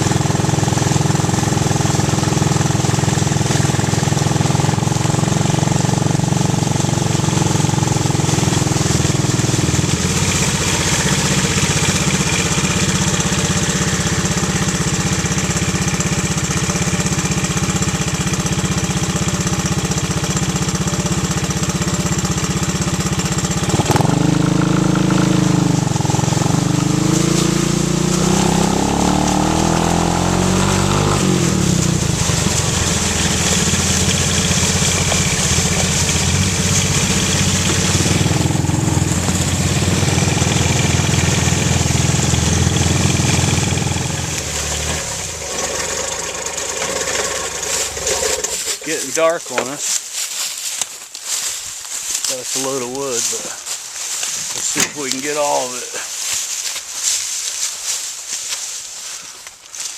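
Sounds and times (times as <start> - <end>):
atv engine revving: 0.0 - 50.0, 52.0 - 59.9.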